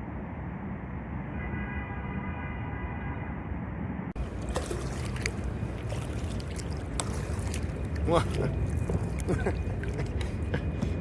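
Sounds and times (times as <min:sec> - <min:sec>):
kayak paddle splashing: 0:04.2 - 0:11.0.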